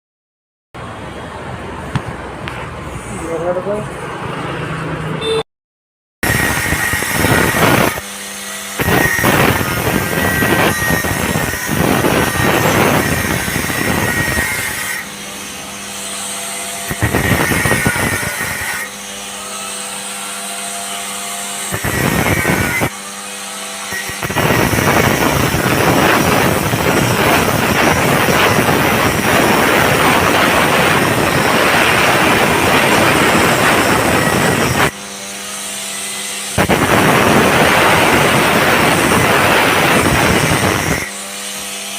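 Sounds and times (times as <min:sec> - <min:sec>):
angle grinder grinding metal: 0:06.2 - 0:41.9
angle grinder running freely: 0:06.3 - 0:41.9.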